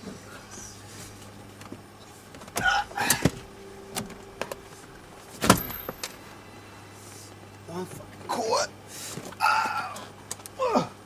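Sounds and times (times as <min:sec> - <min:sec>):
sharp metal clank: 0:05.4 - 0:06.4.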